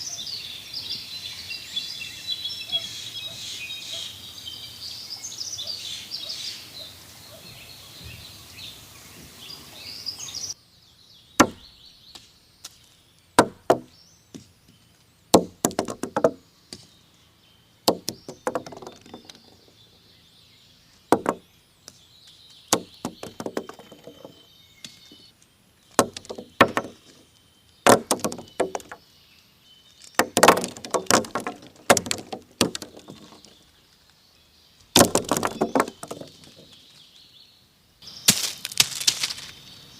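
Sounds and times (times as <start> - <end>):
forest birdsong: 0.0 - 39.9
pine cones knocking on table: 11.4 - 11.7, 13.4 - 14.5, 15.4 - 16.9, 17.9 - 19.7, 21.1 - 21.4, 22.7 - 25.2, 26.0 - 27.2, 27.9 - 29.0, 30.0 - 33.6, 35.0 - 36.8.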